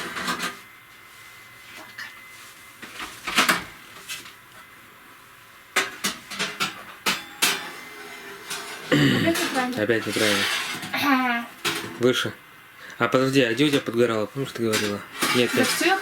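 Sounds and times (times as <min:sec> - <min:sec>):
metal oven rack clattering: 0:08.4 - 0:10.9, 0:14.6 - 0:16.0.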